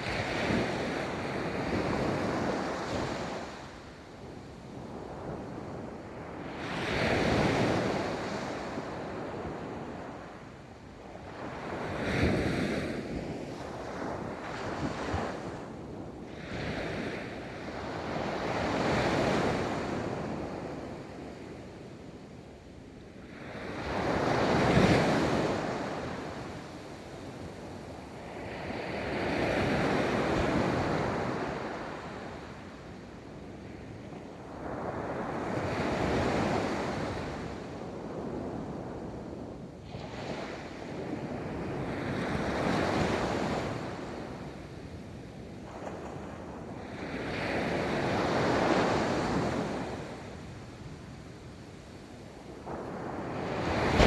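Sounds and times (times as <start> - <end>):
ocean waves breaking on beach: 52.7 - 54.0.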